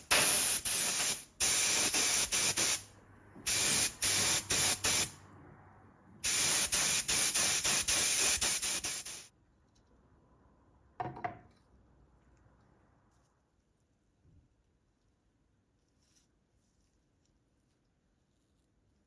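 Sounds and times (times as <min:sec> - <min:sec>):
air tool hissing with whistle: 0:00.0 - 0:02.9, 0:03.5 - 0:05.2, 0:06.2 - 0:09.3.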